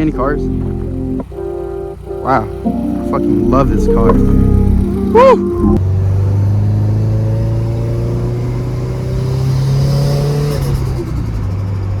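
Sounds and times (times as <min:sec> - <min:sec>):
turbo whistle: 0:03.8 - 0:05.8
car engine pulling under load: 0:05.7 - 0:12.0.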